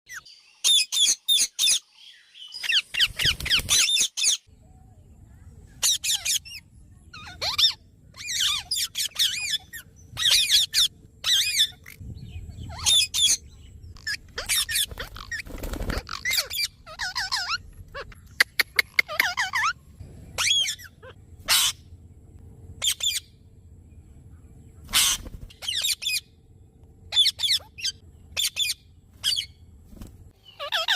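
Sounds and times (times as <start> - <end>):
parrots squawking: 5.8 - 6.6, 7.2 - 12.0, 12.6 - 13.4, 14.0 - 19.8, 20.4 - 21.8, 22.8 - 23.3, 24.9 - 26.2, 27.1 - 29.6, 30.5 - 30.9.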